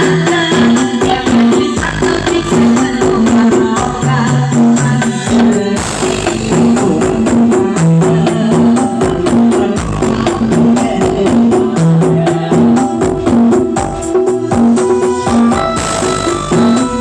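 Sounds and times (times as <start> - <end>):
loud music with bass over loudspeakers: 0.0 - 17.0.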